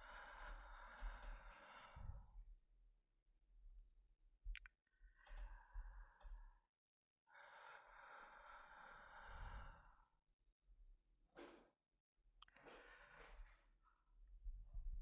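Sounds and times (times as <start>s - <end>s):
man breathing sleepily: 0.0s - 2.4s, 7.3s - 10.2s.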